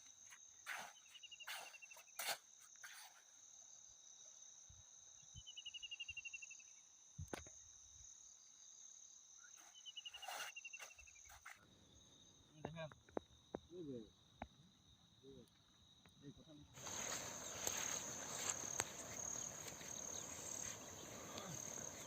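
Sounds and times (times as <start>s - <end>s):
crickets trilling: 0.0s - 22.0s
pulsed insect chirps: 16.8s - 22.0s.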